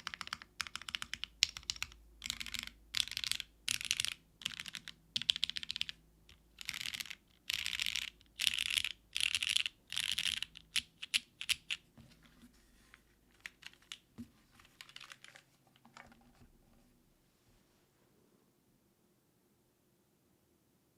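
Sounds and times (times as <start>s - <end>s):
mechanical keyboard typing: 0.0s - 6.0s, 6.6s - 11.8s, 13.4s - 16.2s.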